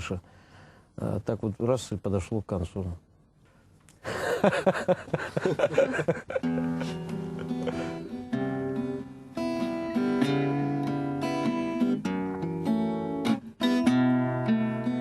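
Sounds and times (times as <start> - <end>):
acoustic guitar chords: 5.5 - 15.0.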